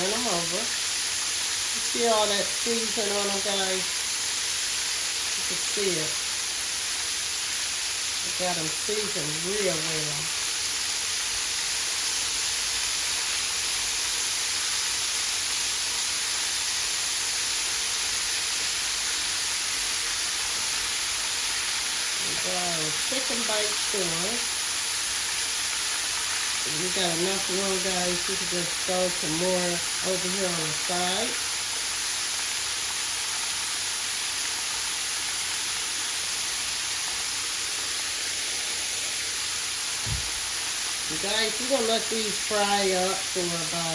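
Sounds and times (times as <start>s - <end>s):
chicken frying in grease: 0.0s - 43.9s.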